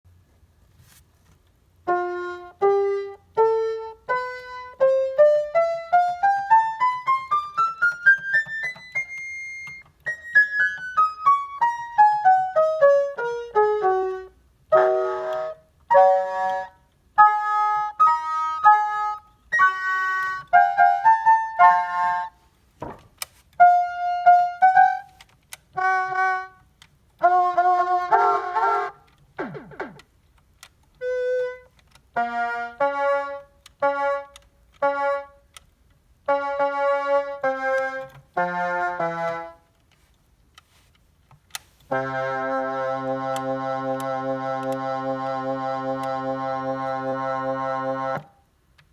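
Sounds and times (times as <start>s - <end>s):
sampling keyboard notes and chords: 1.8s - 35.6s, 36.2s - 40.8s, 41.5s - 48.9s.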